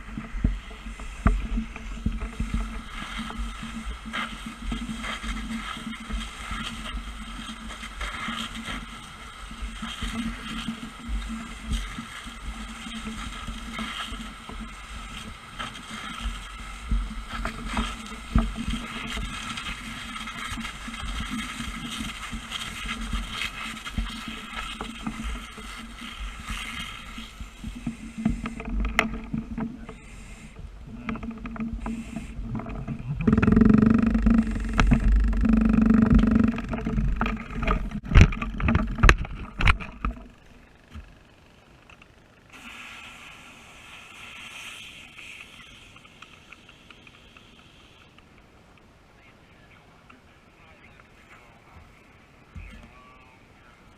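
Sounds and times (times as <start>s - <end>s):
low rumble on microphone: 0.0s - 41.4s.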